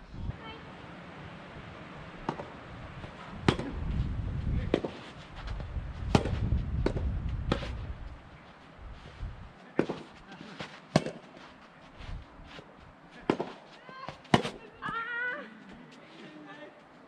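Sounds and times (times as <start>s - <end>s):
wind buffeting microphone: 0.0s - 0.4s, 1.6s - 9.6s
tennis balls struck by rackets: 2.2s - 3.8s, 4.6s - 5.1s, 6.1s - 7.9s, 9.6s - 11.5s, 12.5s - 15.2s.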